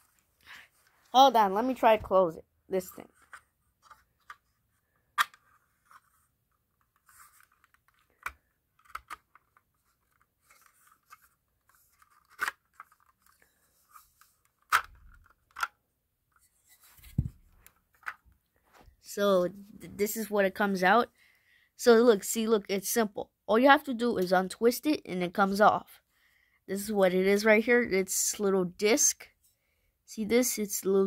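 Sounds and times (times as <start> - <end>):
plastic clicks and snaps: 5.2 - 5.4, 7.6 - 9.7, 14.6 - 15.8.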